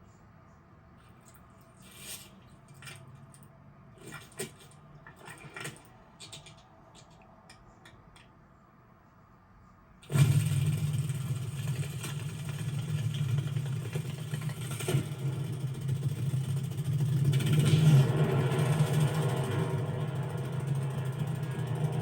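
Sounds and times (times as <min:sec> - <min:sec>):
loud engine-like drone: 0:14.7 - 0:22.0.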